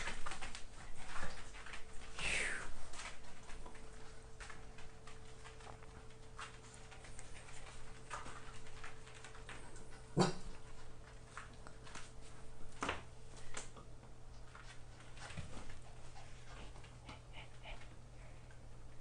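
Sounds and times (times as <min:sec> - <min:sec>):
dog panting: 0:15.6 - 0:18.3.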